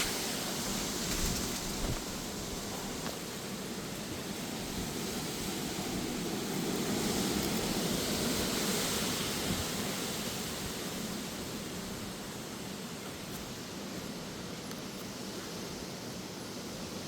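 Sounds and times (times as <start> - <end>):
strong gusty wind: 0.0 - 12.6
rain: 0.0 - 17.0.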